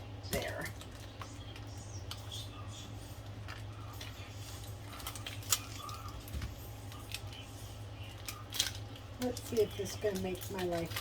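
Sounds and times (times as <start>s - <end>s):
steady low hum: 0.0s - 11.0s
kitchen items clicking: 8.2s - 11.0s.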